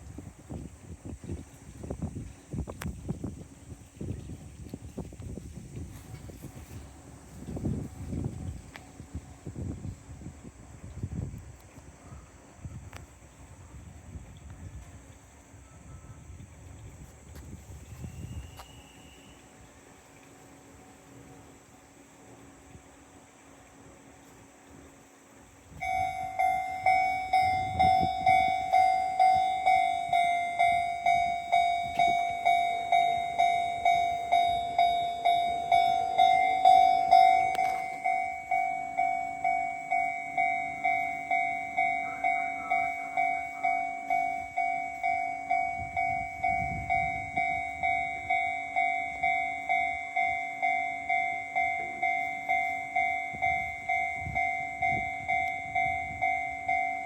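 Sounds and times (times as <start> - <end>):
level-crossing warning bell ringing: 25.7 - 57.0
low rumbles: 25.8 - 57.0.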